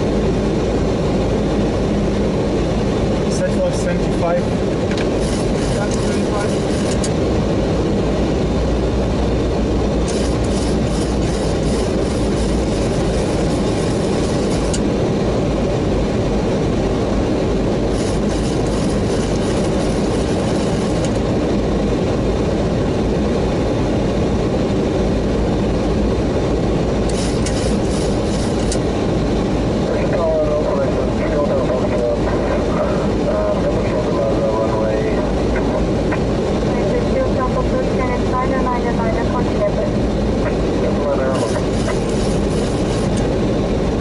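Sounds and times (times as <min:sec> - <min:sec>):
rush of airflow: 0:00.0 - 0:31.3, 0:39.4 - 0:44.0
engine rumble: 0:00.0 - 0:44.0
crackling rattle: 0:05.0 - 0:07.2, 0:10.0 - 0:14.9, 0:17.9 - 0:21.3, 0:27.1 - 0:28.9, 0:41.4 - 0:43.3.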